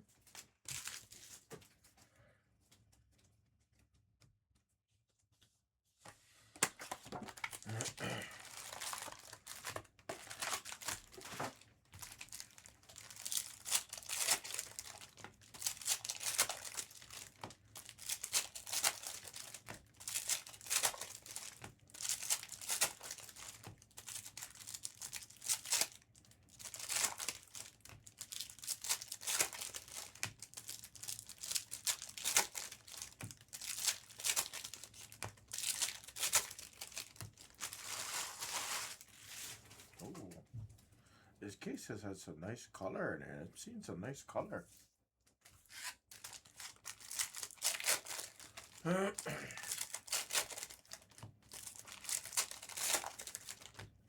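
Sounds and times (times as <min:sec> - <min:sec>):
foil wrappers tearing and crinkling: 0:00.2 - 0:01.4, 0:06.6 - 0:39.9, 0:45.7 - 0:53.9.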